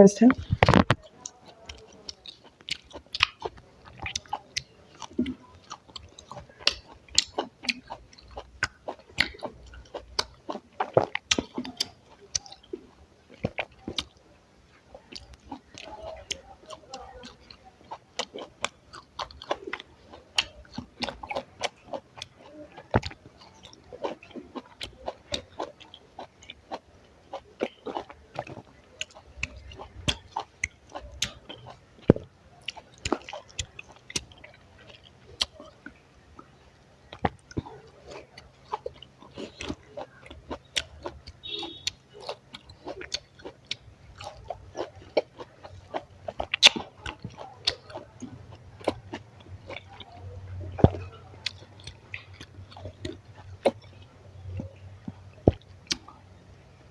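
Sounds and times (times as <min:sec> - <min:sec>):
person chewing with mouth sounds: 0:00.2 - 0:56.9.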